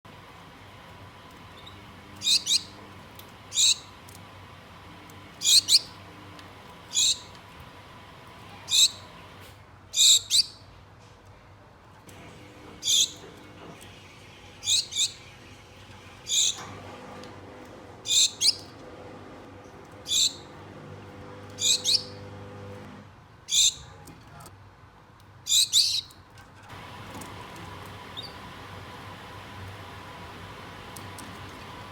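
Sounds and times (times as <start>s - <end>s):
finches giving high contact calls: 1.6s - 2.8s, 3.5s - 3.9s, 5.4s - 6.0s, 6.9s - 7.4s, 8.6s - 9.1s, 12.8s - 13.2s, 14.6s - 15.2s, 16.3s - 16.6s, 18.1s - 18.7s, 20.1s - 20.5s, 21.5s - 22.2s.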